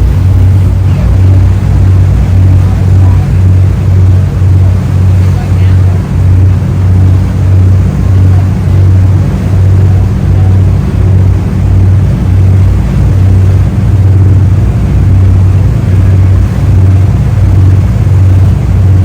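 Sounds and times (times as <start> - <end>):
engine running: 0.0 - 19.0.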